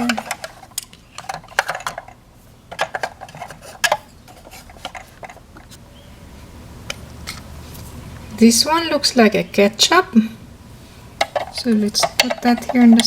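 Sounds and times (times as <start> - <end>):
plastic toy pieces clicking: 11.2 - 13.0.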